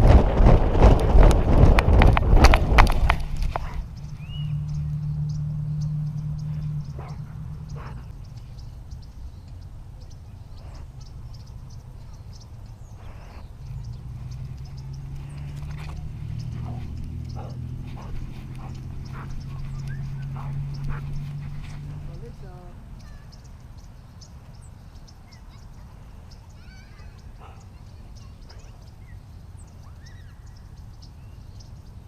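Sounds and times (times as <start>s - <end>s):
clicks and rustles: 0.0s - 4.2s, 14.2s - 22.2s
low steady hum: 0.0s - 25.0s.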